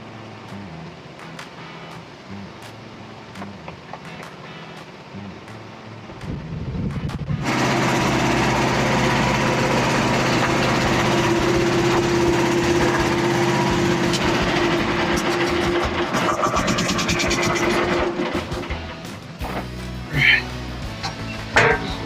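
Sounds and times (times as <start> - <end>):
small gasoline engine running: 3.2 - 19.5.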